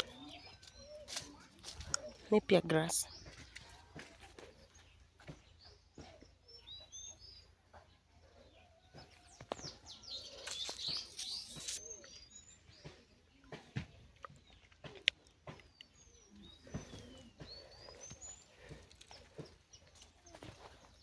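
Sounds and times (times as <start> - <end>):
small birds chirping: 0.0 - 21.0.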